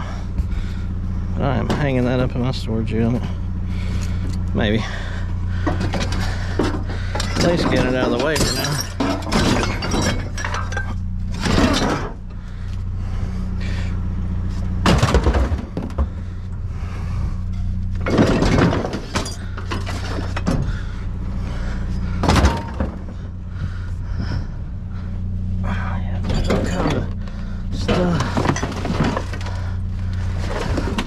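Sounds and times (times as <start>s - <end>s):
engine idling: 0.0s - 31.0s
junk clanking in a dumpster: 1.6s - 2.3s, 3.0s - 12.7s, 14.8s - 16.6s, 17.5s - 24.4s, 26.1s - 31.0s.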